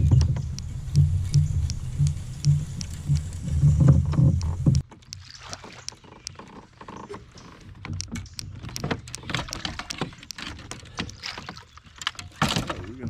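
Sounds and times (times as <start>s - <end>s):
faint low hum: 0.0s - 4.8s
fishing gear clicks and knocks: 3.7s - 13.0s.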